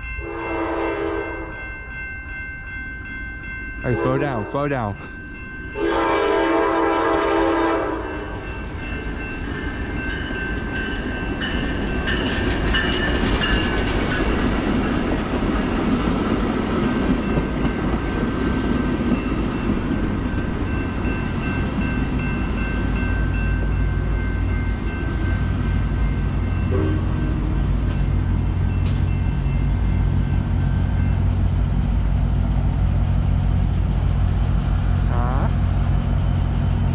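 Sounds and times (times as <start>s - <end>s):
train air horn: 0.2s - 1.4s, 5.8s - 8.3s, 26.7s - 28.0s, 34.1s - 36.0s
train wheels rumbling on rails: 2.8s - 36.9s.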